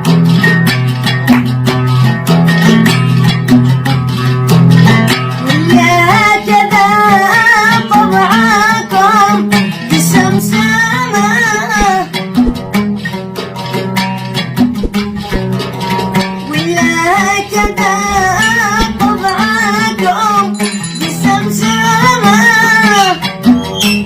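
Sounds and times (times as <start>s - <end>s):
plucked lute melody: 0.0s - 24.0s
man singing: 16.5s - 23.3s.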